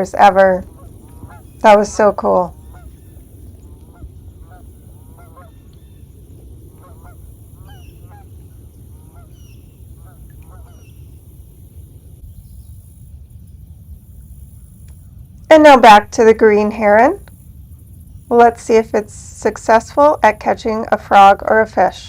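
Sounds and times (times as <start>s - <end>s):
geese honking: 0.0s - 5.8s, 6.7s - 11.0s.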